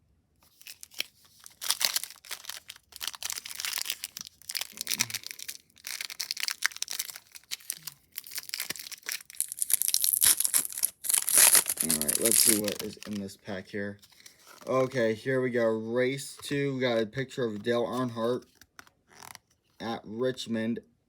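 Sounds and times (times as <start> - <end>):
foil wrapper tearing and crinkling: 0.4 - 13.3.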